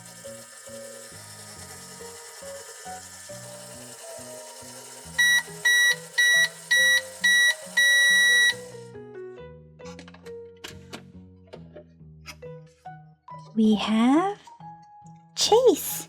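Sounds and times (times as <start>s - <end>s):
microwave beeping: 0.0s - 8.9s
children's background music: 5.6s - 16.0s.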